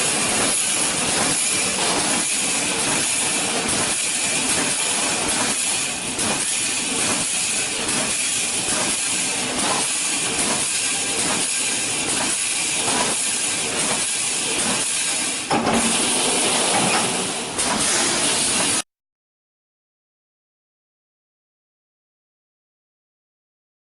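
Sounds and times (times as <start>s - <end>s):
welding machine hissing din: 0.0s - 18.8s.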